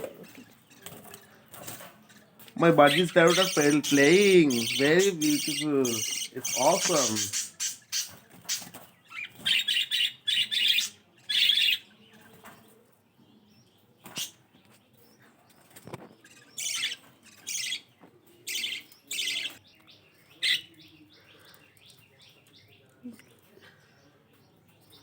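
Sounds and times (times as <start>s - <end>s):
budgerigars chirping: 2.6s - 11.9s, 16.2s - 17.9s, 18.5s - 21.4s.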